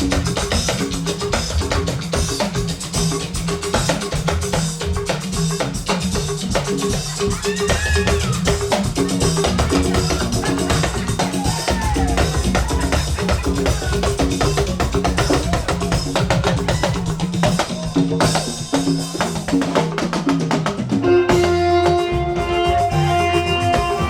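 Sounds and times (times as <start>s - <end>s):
bass line: 0.0s - 24.0s
drum kit beat: 0.0s - 24.0s
church band playing a hymn: 6.0s - 24.0s
sustained keyboard chords: 8.3s - 24.0s.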